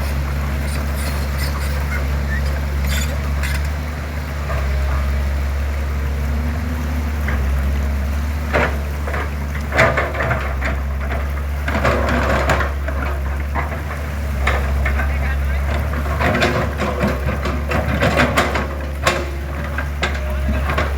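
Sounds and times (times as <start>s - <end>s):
knocks and scrapes: 0.0s - 3.8s
excavator diesel engine running: 0.0s - 20.9s.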